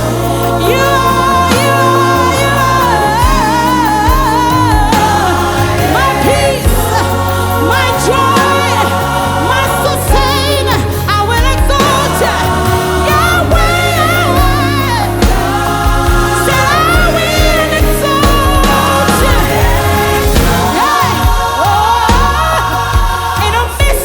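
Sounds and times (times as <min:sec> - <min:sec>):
bass guitar: 0:00.0 - 0:24.0
choir voices: 0:00.0 - 0:24.0
drums: 0:00.0 - 0:24.0
keyboards: 0:00.0 - 0:24.0
person singing with vibrato: 0:00.0 - 0:24.0.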